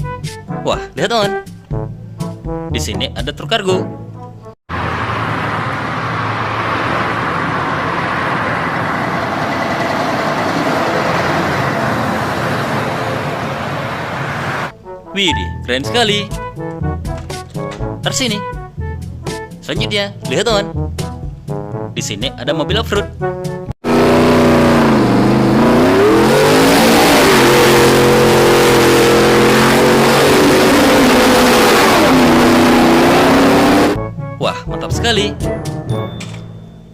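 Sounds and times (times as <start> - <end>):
car engine revving: 4.7 - 14.7, 23.8 - 34.0
truck running: 4.7 - 14.7, 23.8 - 34.0.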